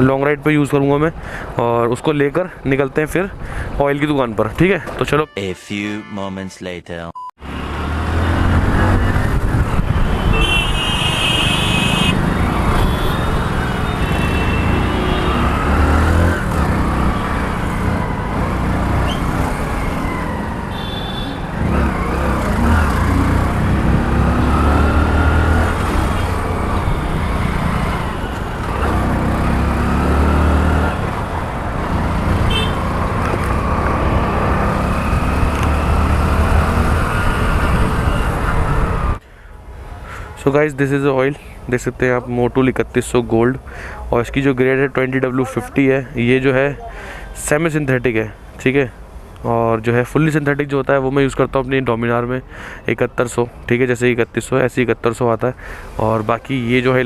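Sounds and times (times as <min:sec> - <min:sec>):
vehicle horns tooting: 0:05.0 - 0:06.7, 0:09.9 - 0:15.6, 0:20.7 - 0:21.6, 0:32.4 - 0:32.9
passing vehicles: 0:07.4 - 0:57.0
wind and motorcycle engine rumble: 0:07.5 - 0:40.0.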